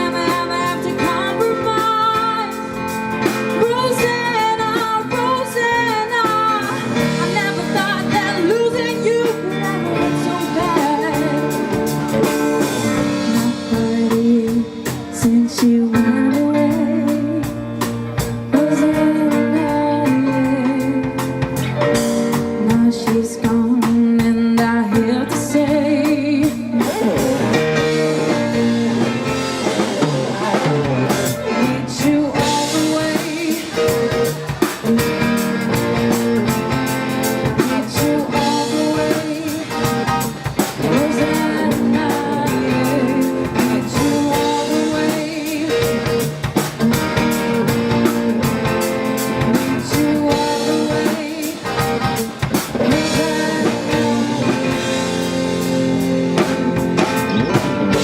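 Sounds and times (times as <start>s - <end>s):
drum kit: 0.0s - 58.0s
electric guitar: 0.0s - 58.0s
person singing: 0.0s - 58.0s.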